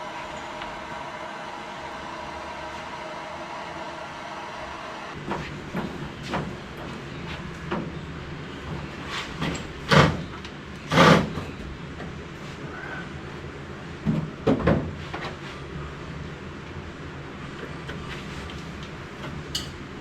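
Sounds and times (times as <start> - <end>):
hand tools knocking on metal parts: 19.5 - 19.9.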